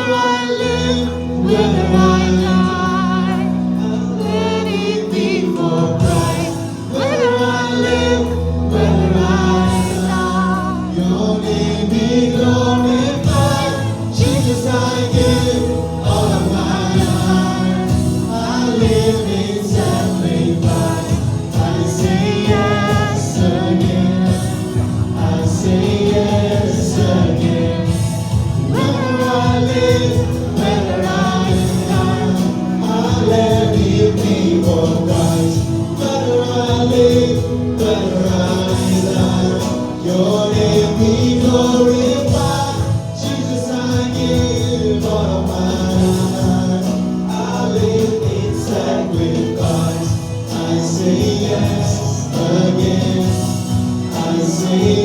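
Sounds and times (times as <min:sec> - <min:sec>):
bass: 0:00.0 - 0:55.0
people singing: 0:00.0 - 0:55.0
steady drum beat: 0:00.0 - 0:55.0
worship band playing: 0:00.0 - 0:55.0.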